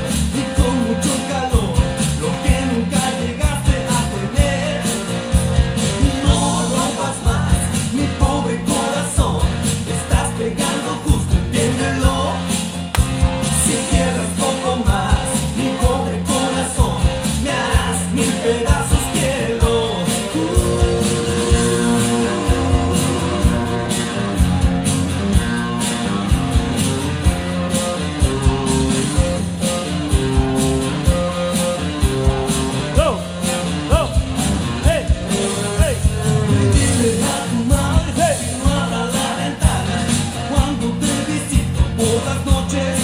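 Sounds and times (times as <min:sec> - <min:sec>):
dance music with sung vocal: 0:13.4 - 0:24.0, 0:34.8 - 0:43.0.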